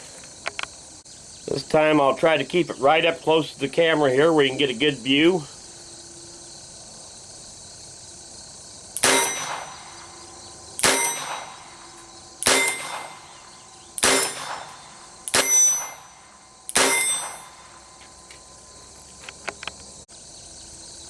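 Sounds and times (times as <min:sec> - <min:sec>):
revolver shots with metallic ring: 0:09.0 - 0:18.0.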